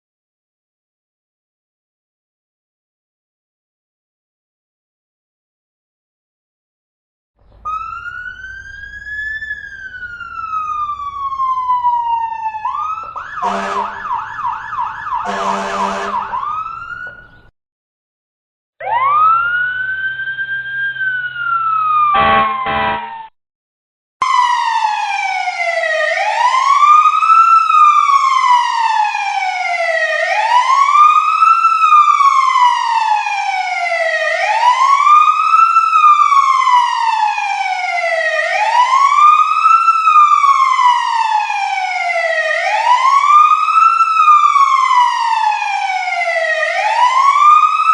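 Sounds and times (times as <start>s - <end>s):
fire truck siren: 7.6s - 17.5s, 18.8s - 23.4s, 24.2s - 47.9s.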